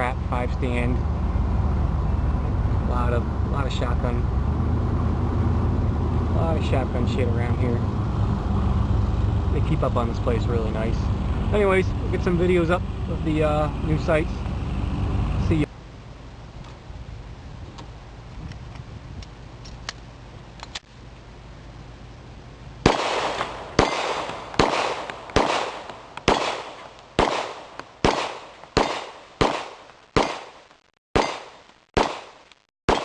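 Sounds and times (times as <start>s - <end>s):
low rumble: 0.0s - 19.2s
pistol shots echoing: 22.9s - 30.6s, 31.2s - 33.0s.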